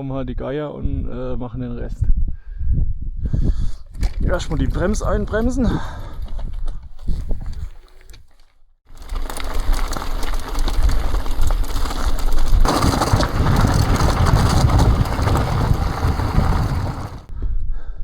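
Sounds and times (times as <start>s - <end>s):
wind rushing on microphone: 0.8s - 7.7s, 12.6s - 17.6s
tyres crunching on gravel: 8.9s - 17.3s.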